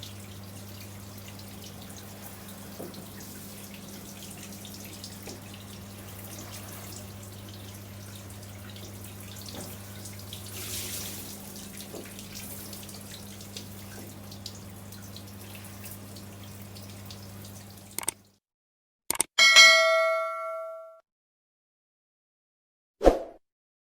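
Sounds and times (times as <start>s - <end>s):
water dripping and spattering: 0.0s - 18.4s.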